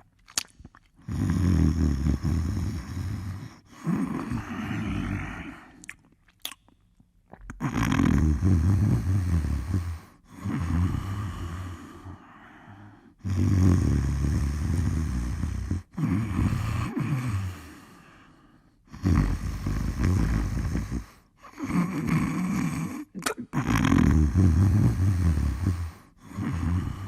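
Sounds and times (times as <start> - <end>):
person snoring: 1.0 - 5.8, 7.6 - 27.0.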